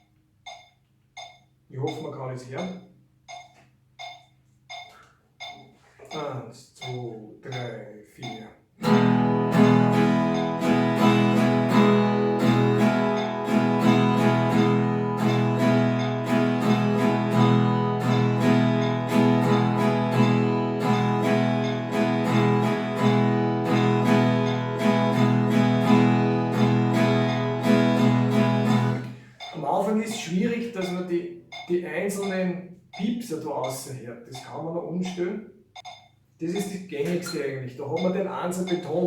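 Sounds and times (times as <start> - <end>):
acoustic guitar strumming: 8.8 - 31.2.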